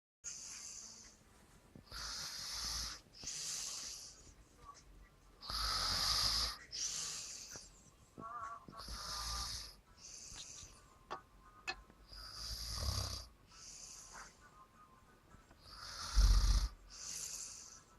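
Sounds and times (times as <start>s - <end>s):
person snoring hissing breaths: 0.2s - 1.2s, 1.8s - 4.4s, 5.4s - 7.8s, 8.8s - 10.8s, 12.1s - 14.4s, 15.6s - 17.9s.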